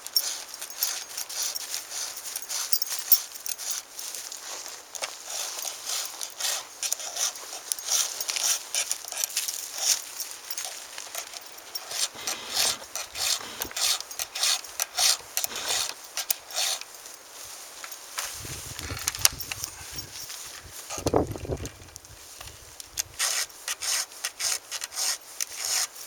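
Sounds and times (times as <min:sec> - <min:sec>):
file scraping chain teeth: 0:00.0 - 0:03.9, 0:04.5 - 0:17.1, 0:23.1 - 0:26.0.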